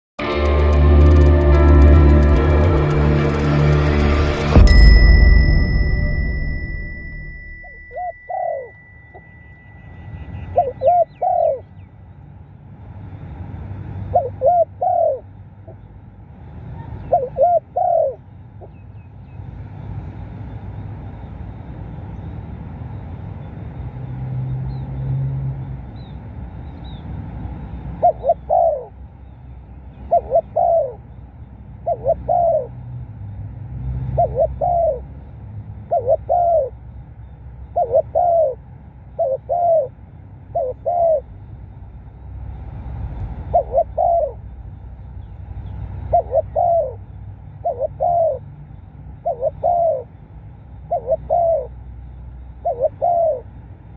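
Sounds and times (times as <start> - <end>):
dove cooing: 7.6 - 8.7, 10.4 - 11.6, 14.1 - 15.2, 17.1 - 18.2, 28.0 - 28.9, 30.1 - 31.0, 31.8 - 32.7, 34.2 - 35.0, 35.9 - 36.7, 37.8 - 38.6, 39.2 - 39.9, 40.5 - 41.2, 43.5 - 44.4, 46.0 - 47.0, 47.6 - 48.4, 49.2 - 50.1, 50.9 - 51.7, 52.6 - 53.4
low background rumble: 38.5 - 47.7.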